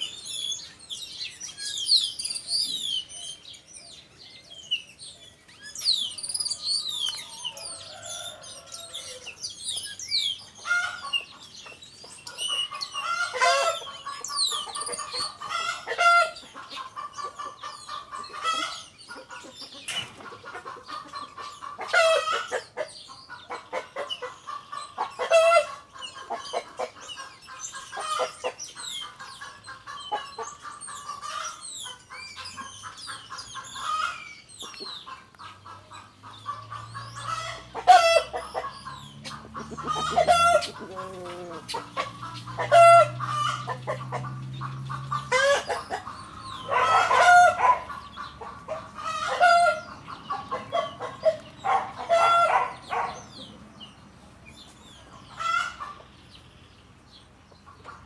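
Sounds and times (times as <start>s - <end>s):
chickens clucking: 0.0s - 58.0s
small birds chirping: 0.0s - 58.0s
rooster crowing: 7.2s - 9.3s, 39.7s - 41.7s.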